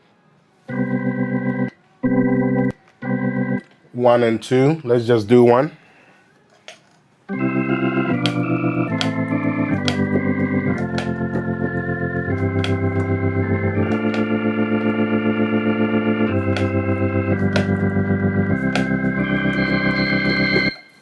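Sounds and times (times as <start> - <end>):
synthesizer organ chords: 0.7 - 3.6, 7.3 - 21.0
key clicks: 7.4 - 20.8.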